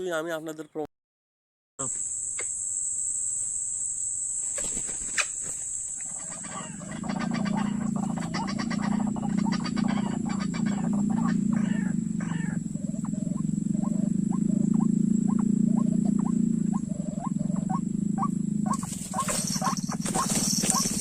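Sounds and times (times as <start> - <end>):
high-pitched buzz: 1.8 - 21.0
harsh croaking animal calls: 4.6 - 21.0.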